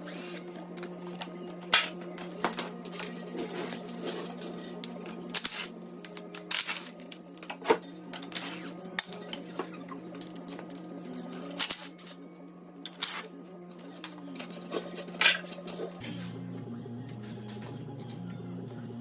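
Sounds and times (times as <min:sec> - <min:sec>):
steady low hum: 0:00.0 - 0:19.0
metal tools clinking and clanking: 0:00.6 - 0:12.2, 0:12.8 - 0:16.0.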